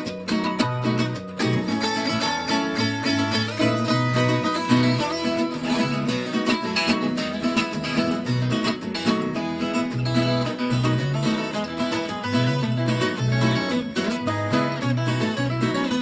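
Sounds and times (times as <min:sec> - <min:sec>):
bass line: 0:00.0 - 0:16.0
plucked acoustic guitar: 0:00.0 - 0:16.0.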